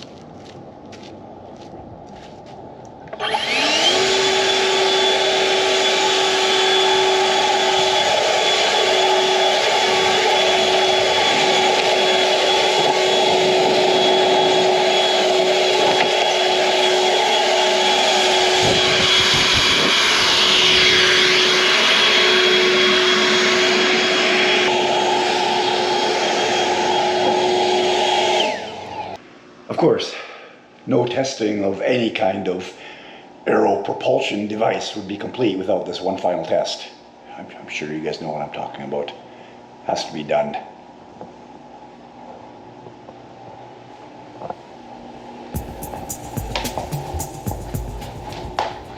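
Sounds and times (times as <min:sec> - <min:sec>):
leaf blower fan whine: 0:03.0 - 0:29.2, 0:45.1 - 0:48.9.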